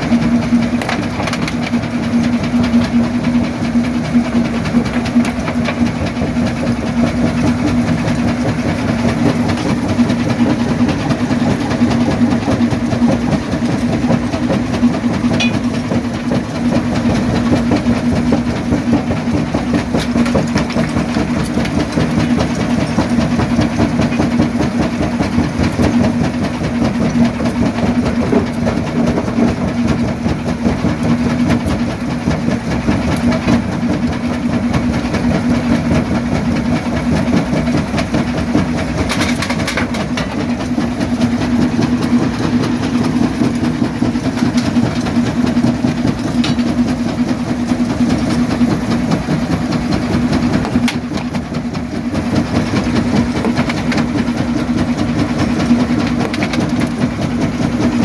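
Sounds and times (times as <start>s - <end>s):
jaw crusher machine hum: 0.0s - 58.0s.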